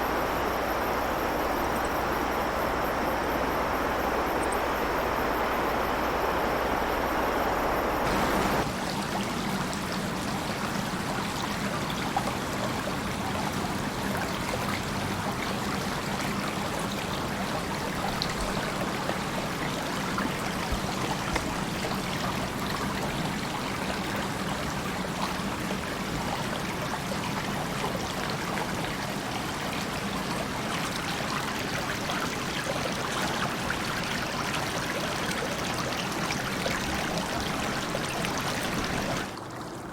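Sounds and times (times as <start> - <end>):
river babbling over stones: 8.0 - 11.2, 29.9 - 39.4.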